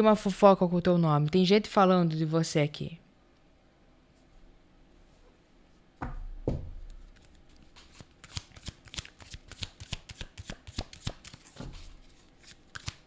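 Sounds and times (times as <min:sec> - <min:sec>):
cards shuffling: 0:07.0 - 0:13.0.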